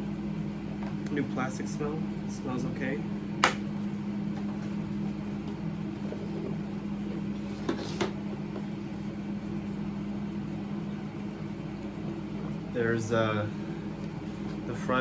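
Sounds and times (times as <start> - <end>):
appliance humming: 0.0 - 15.0.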